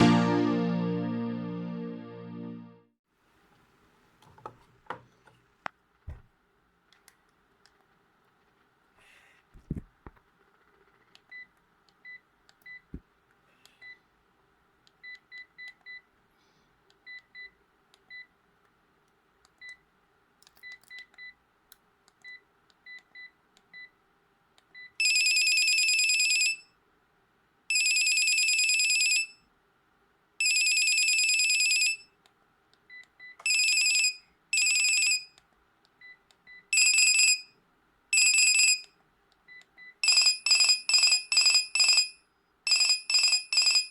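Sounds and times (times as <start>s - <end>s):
buzzy phone ringtone: 0.0s - 2.8s, 33.5s - 35.3s, 36.8s - 37.5s, 38.2s - 38.8s, 40.0s - 43.9s
phone keypad beeps: 39.5s - 42.1s, 42.7s - 43.9s.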